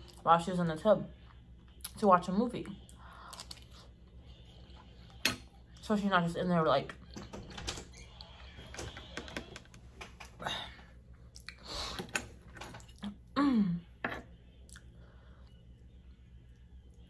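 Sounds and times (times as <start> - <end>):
person chewing food: 2.9 - 5.7.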